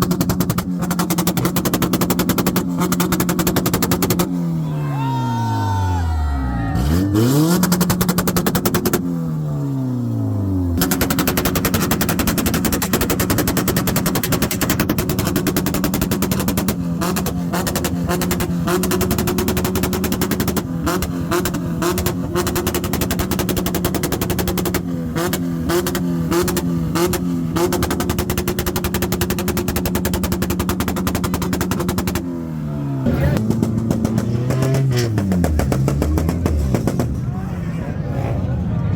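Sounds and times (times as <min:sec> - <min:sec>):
exhaust pops and bangs: 0:00.0 - 0:04.3, 0:10.8 - 0:32.3, 0:33.1 - 0:37.2
car engine revving: 0:00.0 - 0:04.6, 0:06.6 - 0:38.9.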